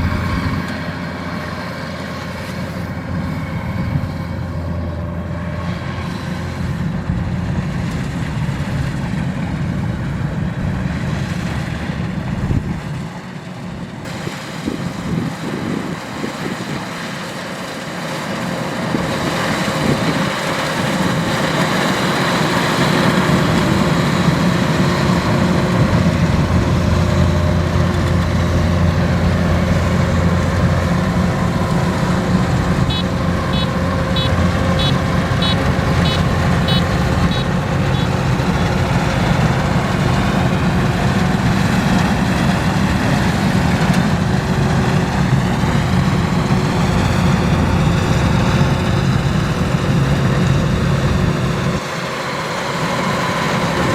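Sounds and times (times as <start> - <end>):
combine harvester diesel engine: 0.0 - 53.9
reversing beeper short beeps: 32.9 - 38.2.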